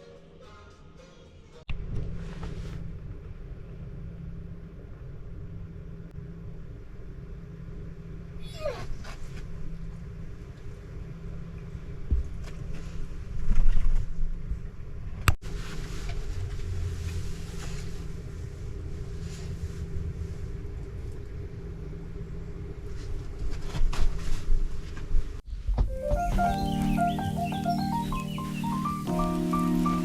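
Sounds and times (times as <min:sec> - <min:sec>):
vehicle engine rumbling: 0:01.7 - 0:30.0.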